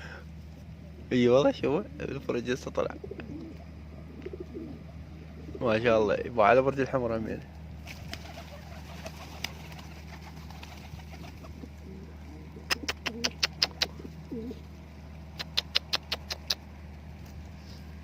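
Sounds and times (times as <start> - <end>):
pigeons cooing: 0.0 - 6.1, 7.6 - 16.8
sharp clicks: 15.4 - 16.6.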